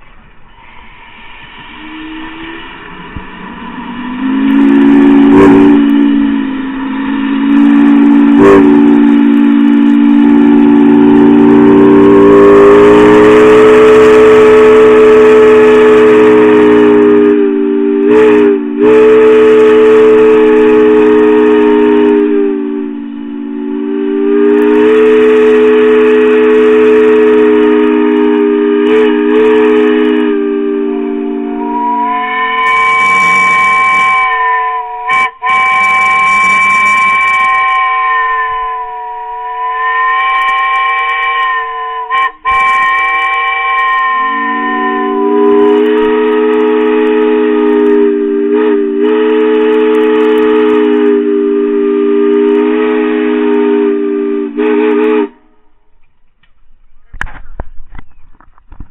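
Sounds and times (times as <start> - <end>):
multi-tone steam whistle blowing: 0.0 - 55.8.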